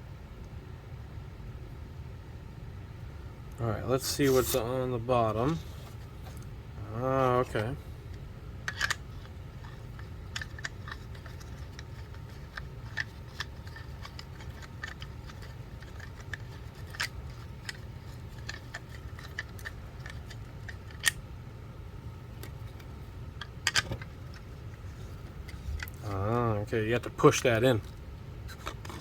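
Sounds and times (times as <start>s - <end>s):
steady low hum: 0.0s - 29.0s
plastic parts clicking and tapping: 8.7s - 21.2s, 22.4s - 24.5s.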